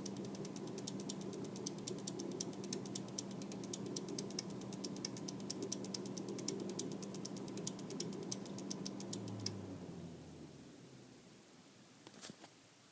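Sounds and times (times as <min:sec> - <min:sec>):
power supply rapid clicking: 0:00.0 - 0:09.6.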